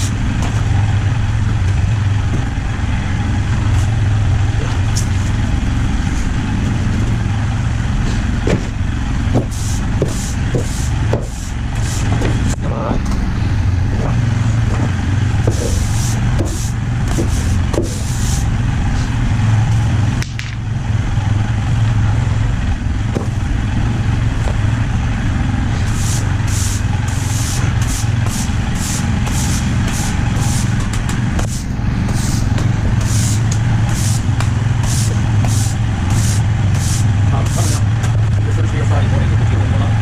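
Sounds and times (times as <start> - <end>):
low machine hum: 0.0 - 40.0
short hissing bursts: 9.5 - 12.1, 25.8 - 30.8, 31.4 - 37.8.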